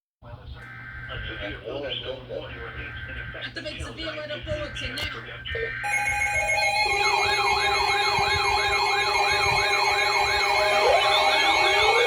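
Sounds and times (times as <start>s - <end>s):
lower steady tone: 5.8s - 12.0s
steady high alert tones: 5.8s - 12.0s
warbling siren tone: 5.8s - 12.0s.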